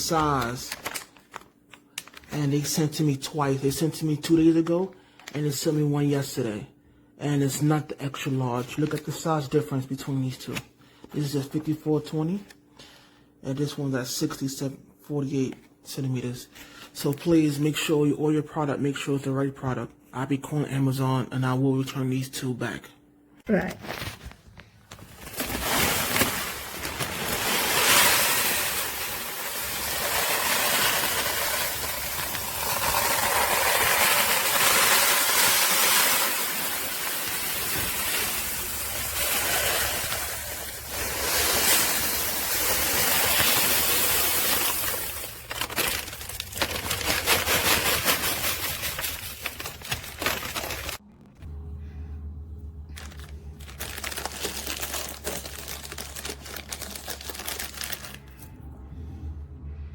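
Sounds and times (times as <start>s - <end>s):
plastic bags rustling and crinkling: 0.0s - 4.6s, 23.7s - 51.0s, 52.9s - 58.5s
low hum: 49.8s - 54.9s, 58.2s - 59.9s.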